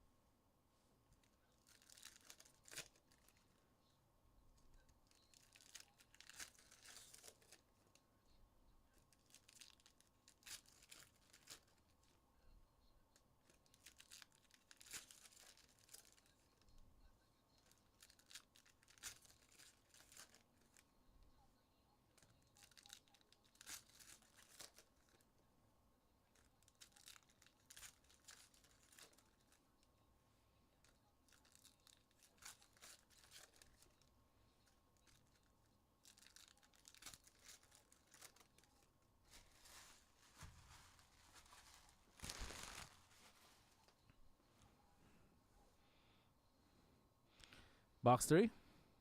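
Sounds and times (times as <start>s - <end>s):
card pack wrappers tearing and crinkling: 1.6s - 3.4s, 5.0s - 7.9s, 9.1s - 11.8s, 13.4s - 16.5s, 17.5s - 20.8s, 22.2s - 25.2s, 26.3s - 29.6s, 31.2s - 43.3s.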